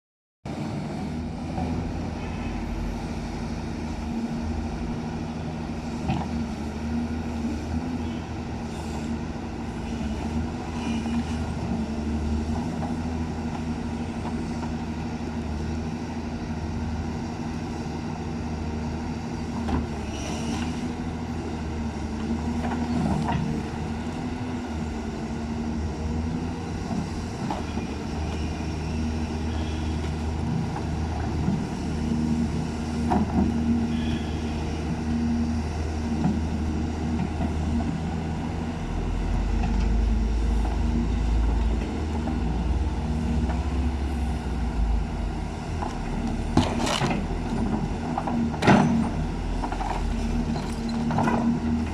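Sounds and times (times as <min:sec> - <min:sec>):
diesel engine running under load: 0:00.5 - 0:51.9.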